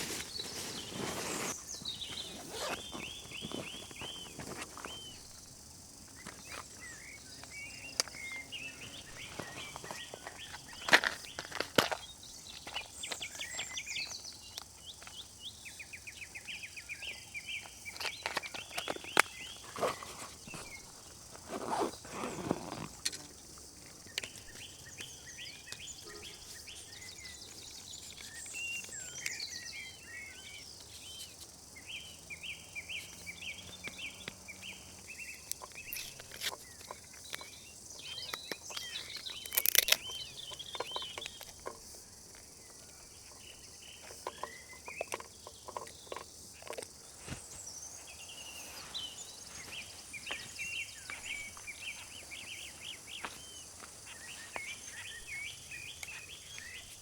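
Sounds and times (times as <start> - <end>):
songbirds chirping and trilling: 0.0 - 57.0
handling clicks and knocks: 17.6 - 25.1, 35.4 - 47.7.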